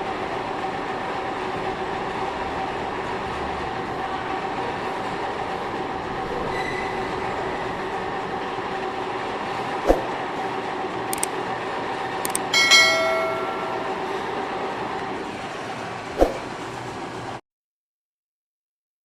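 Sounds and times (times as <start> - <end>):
metal-machining equipment humming: 0.0 - 17.4
ringing metal clang: 12.6 - 14.3.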